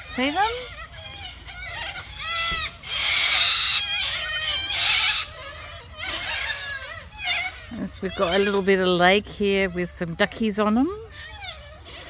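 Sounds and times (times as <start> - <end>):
long harsh cockatoo screeches: 0.0 - 8.6
cockatoos calling: 0.0 - 12.0.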